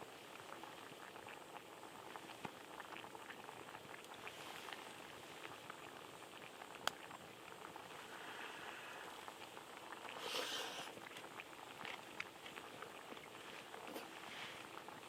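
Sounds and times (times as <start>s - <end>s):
camp stove crackling and ticking: 0.4s - 14.2s
short hiss: 10.1s - 11.0s.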